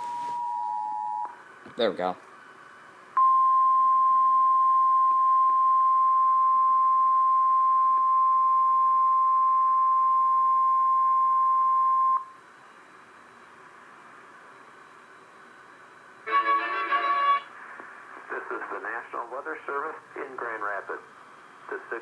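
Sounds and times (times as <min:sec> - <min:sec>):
faint broadcast hiss: 0:12.2 - 0:22.0
steady alarm tone: 0:16.3 - 0:17.5.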